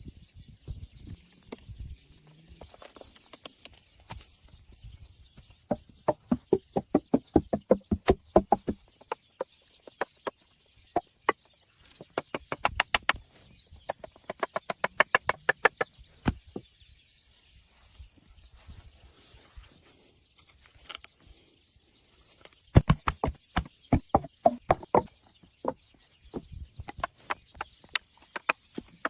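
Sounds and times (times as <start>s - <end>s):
rapid sharp knocks: 5.7s - 8.8s, 22.8s - 25.8s.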